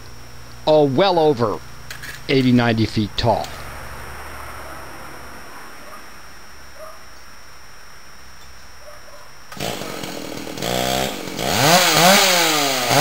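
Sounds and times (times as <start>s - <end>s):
chainsaw engine revving: 9.5s - 13.0s.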